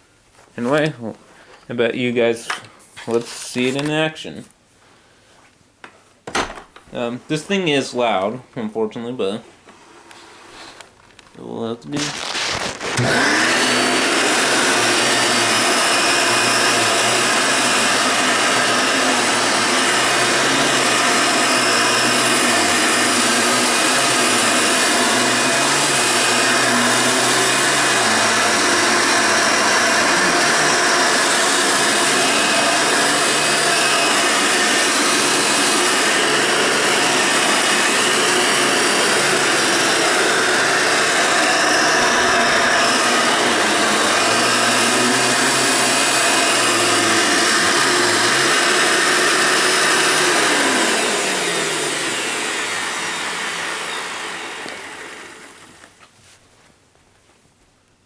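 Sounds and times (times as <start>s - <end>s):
vacuum cleaner running: 12.0s - 55.9s.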